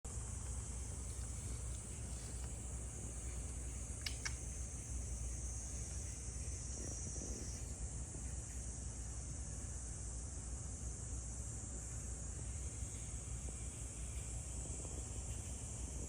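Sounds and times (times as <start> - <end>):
insects droning: 0.1 - 16.0
brief clicks: 4.0 - 4.4.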